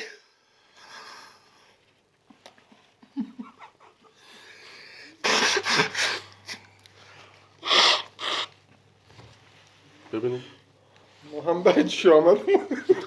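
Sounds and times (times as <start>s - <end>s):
people sneezing: 5.2s - 6.6s, 7.6s - 8.6s.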